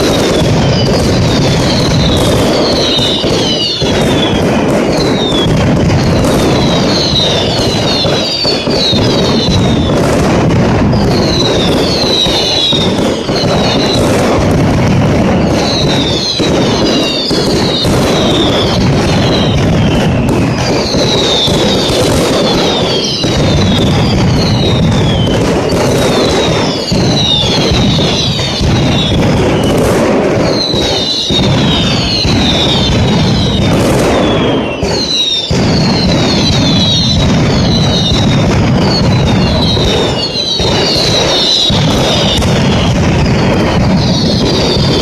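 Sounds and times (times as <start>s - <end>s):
falling whistles: 0.0s - 10.1s, 10.9s - 14.3s, 15.4s - 45.0s
firecracker bangs: 0.0s - 45.0s.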